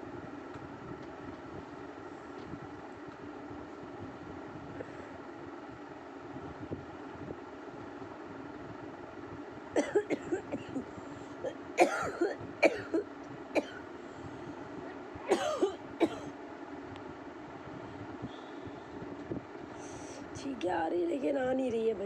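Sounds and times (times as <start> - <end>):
woman clearing her throat: 9.8 - 10.8, 11.8 - 13.0, 15.3 - 16.3
woman coughing: 9.8 - 10.8, 11.4 - 13.8, 15.3 - 16.3.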